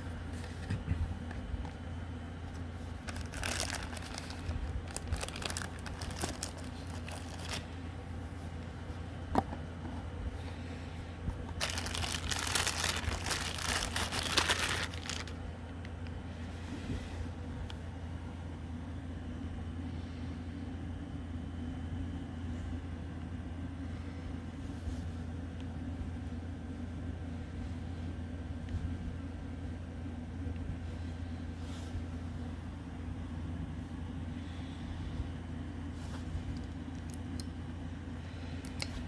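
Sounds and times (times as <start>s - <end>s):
steady low hum: 0.0s - 39.0s
packaging crinkling: 2.6s - 7.8s, 11.5s - 16.2s.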